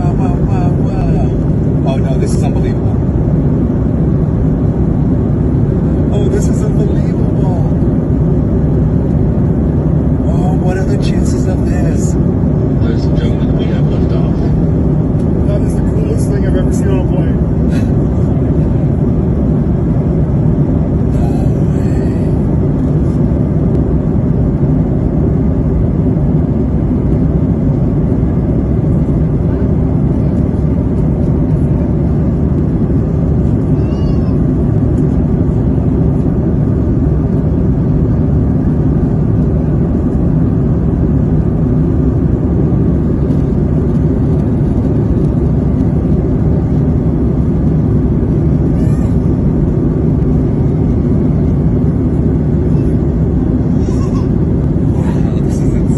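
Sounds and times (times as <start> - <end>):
airliner cabin noise: 0.0 - 55.9.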